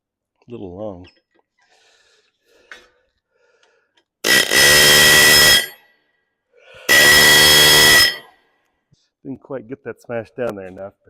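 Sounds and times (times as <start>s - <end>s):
pneumatic rivet gun hammering: 4.2s - 5.8s, 6.9s - 8.2s.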